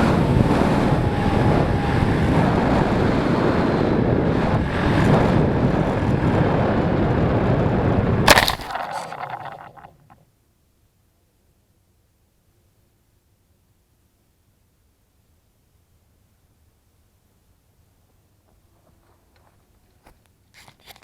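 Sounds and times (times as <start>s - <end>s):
wind roaring over microphone: 0.0s - 8.2s
sharp crack: 8.3s - 10.2s.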